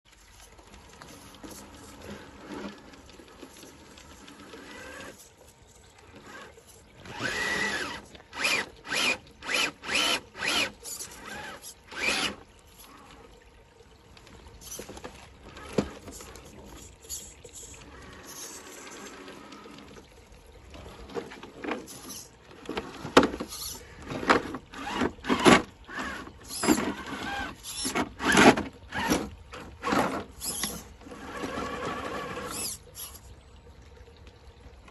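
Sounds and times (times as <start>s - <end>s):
electric motor whirring in bursts: 6.3s - 12.4s.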